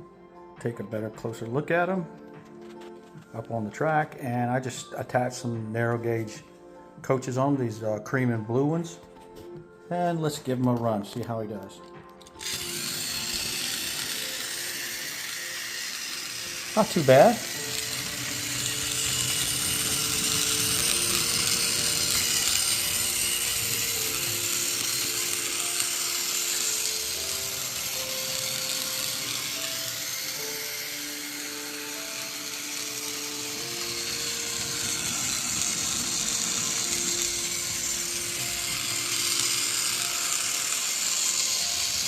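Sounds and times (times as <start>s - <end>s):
slow melody of held notes: 11.4s - 42.0s
toy train motor whirring: 11.8s - 42.0s.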